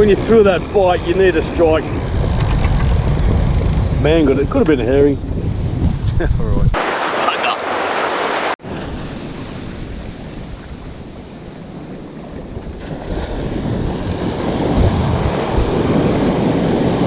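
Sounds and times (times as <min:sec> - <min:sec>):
wind buffeting microphone: 0:00.0 - 0:08.6, 0:09.6 - 0:17.0
ocean surf washing on beach: 0:06.8 - 0:08.6.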